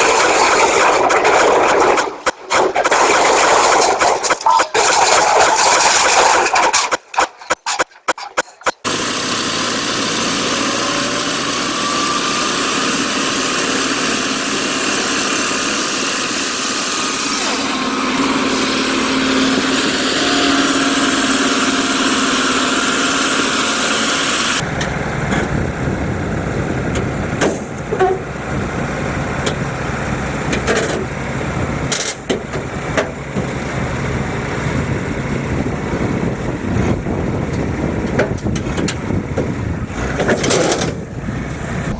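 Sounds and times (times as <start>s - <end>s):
engine running: 8.8s - 41.9s
lower engine sound with knocks: 8.8s - 41.9s.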